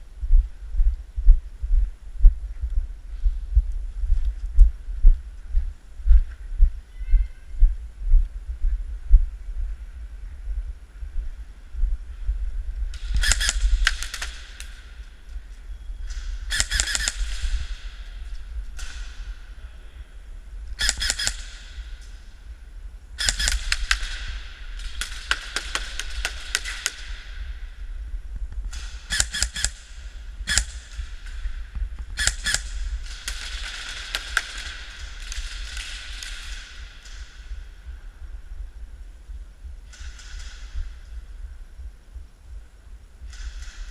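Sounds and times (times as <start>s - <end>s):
steady low rumble: 0.0s - 43.9s
airsoft guns firing bursts: 13.0s - 15.0s, 16.1s - 18.1s, 20.8s - 21.9s, 23.2s - 27.4s, 28.7s - 31.4s, 32.2s - 37.6s.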